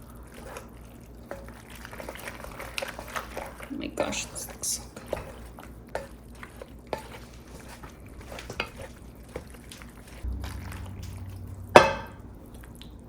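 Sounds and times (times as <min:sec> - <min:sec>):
spoon stirring thick sauce: 0:00.0 - 0:12.9
low steady hum: 0:00.0 - 0:13.0
utensil clinking against pot: 0:11.0 - 0:12.2.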